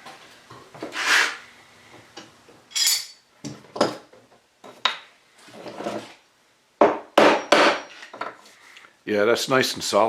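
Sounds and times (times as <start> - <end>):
tool scraping on wood: 0.8 - 1.4.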